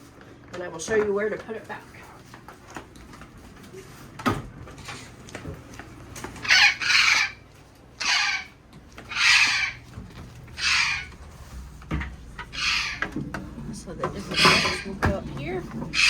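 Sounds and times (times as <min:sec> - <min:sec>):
parrot squawking: 0:06.4 - 0:11.5, 0:12.4 - 0:13.2, 0:14.2 - 0:16.0.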